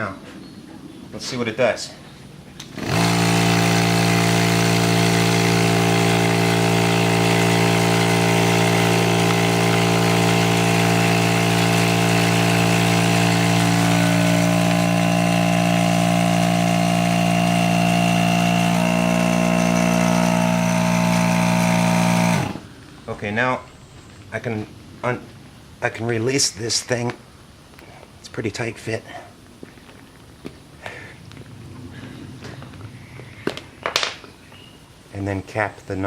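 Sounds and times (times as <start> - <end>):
electric vacuum pump humming: 2.6 - 22.8.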